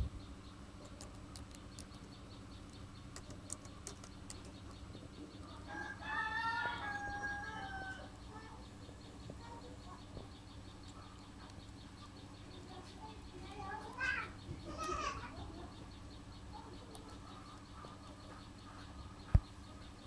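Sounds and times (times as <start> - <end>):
steady low hum: 0.0 - 20.0
faint clicks: 0.8 - 5.4.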